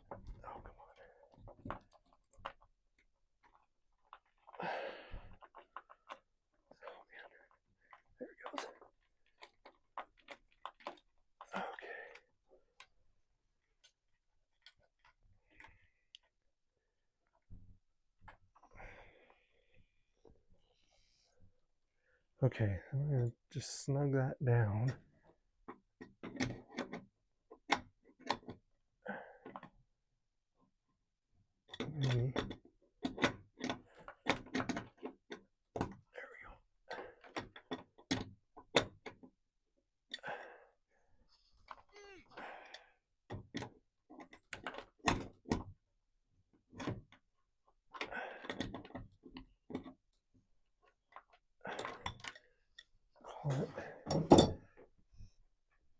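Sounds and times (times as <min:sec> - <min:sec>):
metal hardware clicks and knocks: 0:54.0 - 0:54.7.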